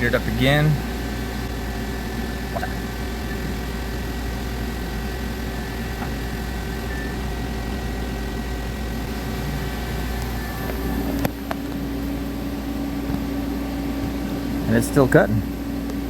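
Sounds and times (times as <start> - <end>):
lathe cutting with low hum: 0.0 - 16.0.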